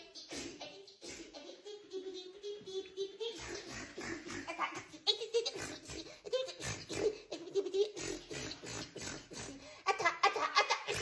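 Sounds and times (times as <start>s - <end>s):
person laughing: 3.1s - 11.0s.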